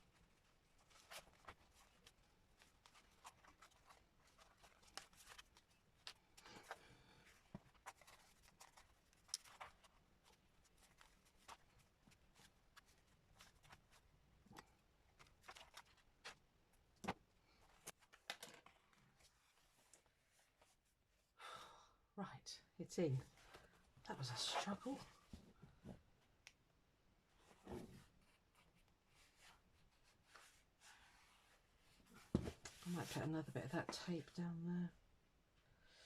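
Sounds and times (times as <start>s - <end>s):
hands clicking and tapping paper: 1.1s - 13.9s.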